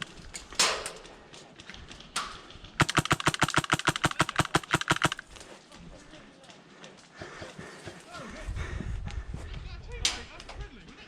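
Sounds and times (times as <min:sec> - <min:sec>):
airsoft rifle firing full-auto: 0:02.8 - 0:05.2.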